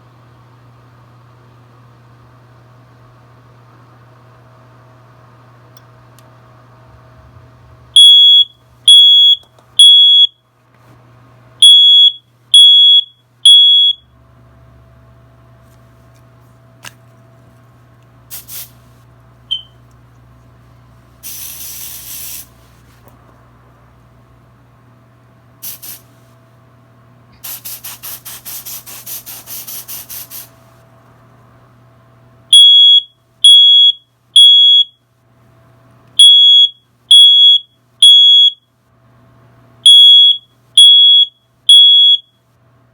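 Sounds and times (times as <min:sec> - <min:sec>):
smoke alarm high piercing beeps: 0:08.0 - 0:10.4, 0:11.6 - 0:14.0, 0:19.5 - 0:19.8, 0:32.5 - 0:35.0, 0:36.2 - 0:38.7, 0:39.8 - 0:42.4
short hissing bursts and clicks: 0:18.3 - 0:18.9, 0:21.2 - 0:22.7, 0:25.6 - 0:26.2, 0:27.3 - 0:30.7.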